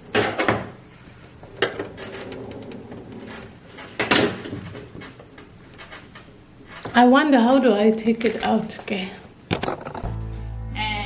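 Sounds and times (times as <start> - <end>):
hard objects knocking and clattering: 9.5 - 10.1.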